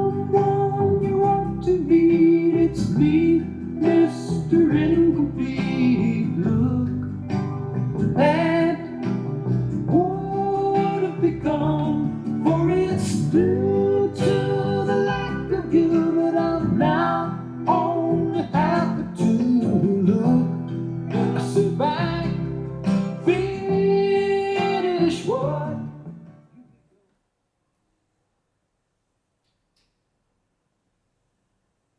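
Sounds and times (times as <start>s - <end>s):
person singing: 0.0s - 22.6s, 23.2s - 25.9s
plucked acoustic guitar: 0.0s - 26.7s.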